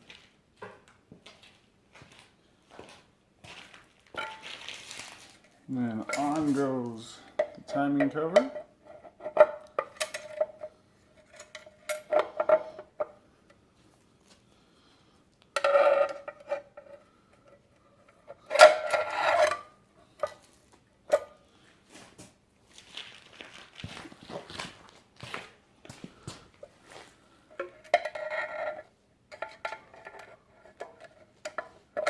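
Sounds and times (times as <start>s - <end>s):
metal tools clinking: 5.9s - 8.6s.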